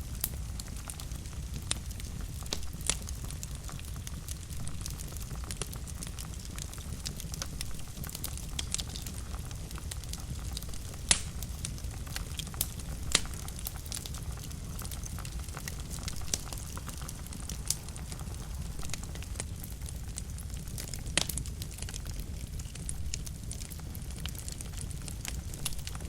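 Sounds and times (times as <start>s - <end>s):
fire crackling in a fireplace: 0.0s - 26.0s.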